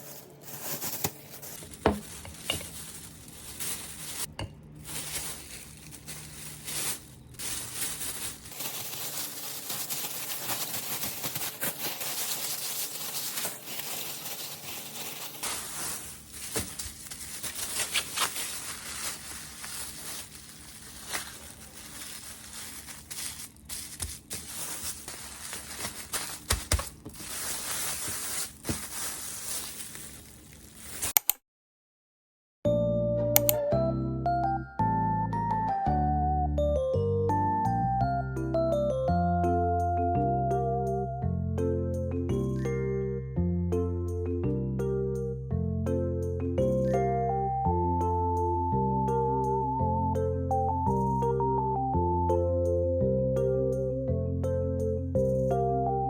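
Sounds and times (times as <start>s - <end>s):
rustling and crinkling: 0.0s - 31.2s.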